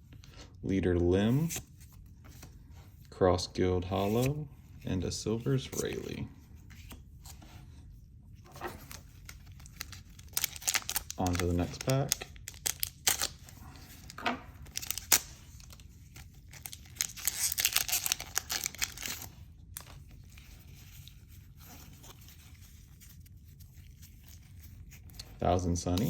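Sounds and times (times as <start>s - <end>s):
cards being handled: 5.5s - 7.5s, 8.5s - 26.0s
foil wrapper tearing and crinkling: 8.9s - 20.1s.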